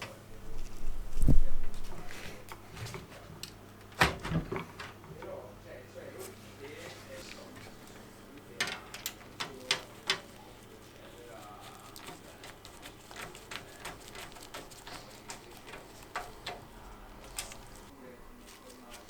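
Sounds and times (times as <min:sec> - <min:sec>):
hard parts clicking and tapping: 0:07.2 - 0:17.9.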